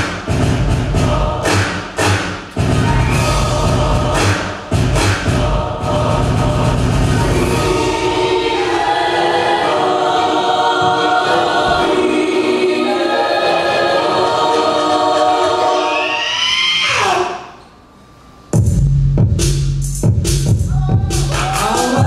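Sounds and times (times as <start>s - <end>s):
choir singing held chords: 0.5s - 17.5s.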